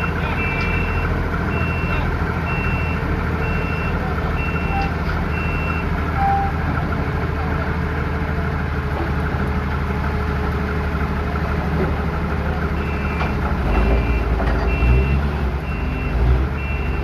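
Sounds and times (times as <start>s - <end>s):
short electronic beeps: 0.0s - 6.6s, 12.8s - 17.0s.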